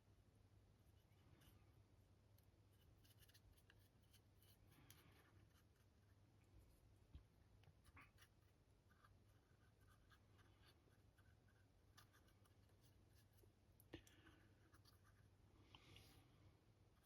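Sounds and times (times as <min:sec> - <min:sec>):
paintbrush scratching and tapping: 0:02.3 - 0:15.4.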